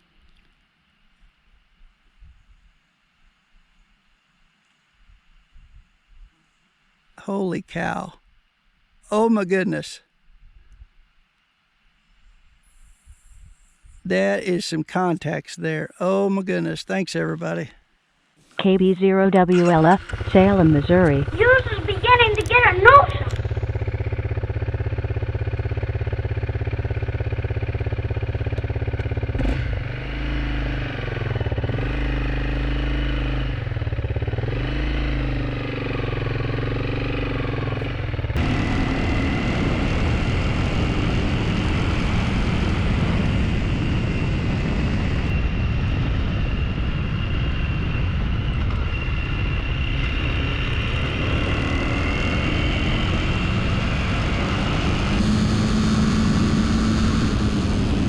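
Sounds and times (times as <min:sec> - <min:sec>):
wind noise: 0:12.2 - 0:14.1, 0:38.4 - 0:58.0
motorcycle engine revving: 0:19.9 - 0:58.0.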